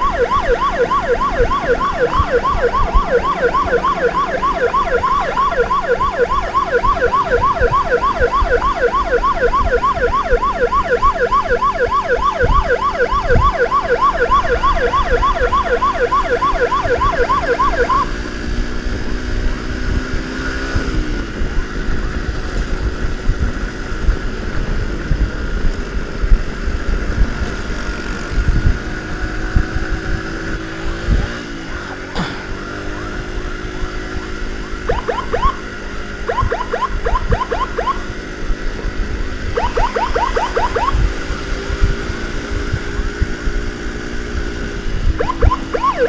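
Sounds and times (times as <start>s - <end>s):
yelping emergency siren: 0.0s - 19.2s, 32.9s - 38.6s, 39.3s - 41.5s, 44.6s - 46.0s
motorcycle engine running: 0.0s - 46.0s.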